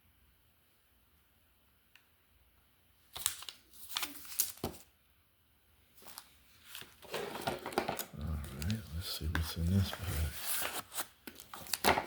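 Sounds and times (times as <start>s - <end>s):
packaging clicks and rustling: 6.0s - 12.0s.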